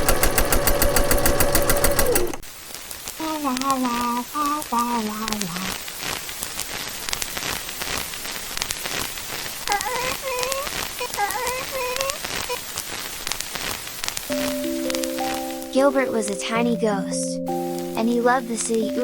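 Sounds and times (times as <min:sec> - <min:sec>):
crackling hiss: 0:02.2 - 0:19.0
wavering voice-like bending notes: 0:14.3 - 0:19.0.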